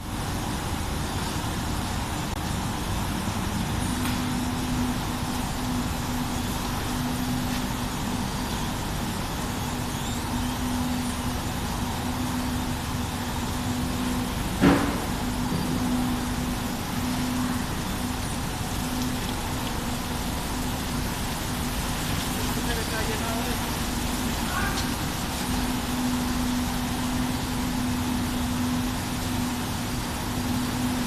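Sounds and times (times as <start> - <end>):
washing machine running: 0.0 - 31.0.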